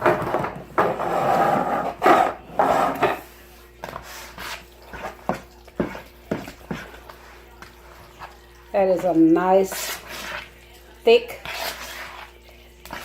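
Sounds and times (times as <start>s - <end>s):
spoon scraping a bowl: 0.8s - 8.4s, 9.6s - 10.6s, 11.2s - 13.0s.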